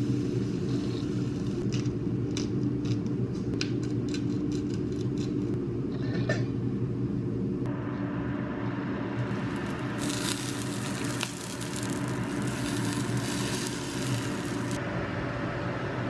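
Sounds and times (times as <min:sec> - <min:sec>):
steady low hum: 0:00.0 - 0:16.0
food sizzling in a pan: 0:09.3 - 0:14.8.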